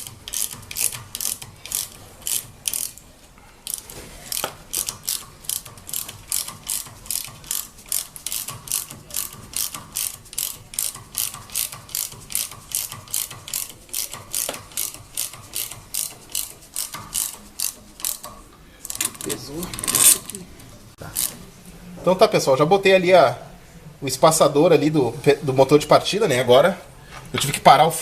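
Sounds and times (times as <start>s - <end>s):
ratchet wrench clicking: 0.0s - 3.0s, 3.6s - 20.4s, 21.1s - 21.4s.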